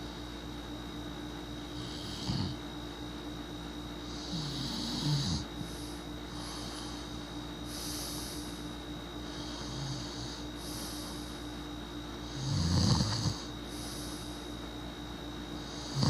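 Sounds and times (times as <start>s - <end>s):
noisy breathing: 1.6s - 2.6s, 4.0s - 14.7s, 15.5s - 16.0s
person snoring: 1.7s - 2.6s, 4.1s - 8.6s, 9.2s - 11.4s, 12.2s - 14.4s, 15.6s - 16.0s.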